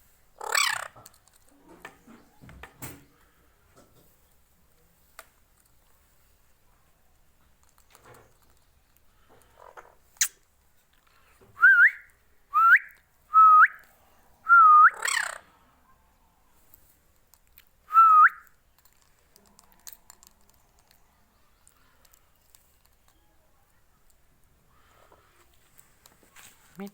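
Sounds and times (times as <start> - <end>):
harsh scratchy parrot call: 0.4 - 1.0, 14.9 - 15.4.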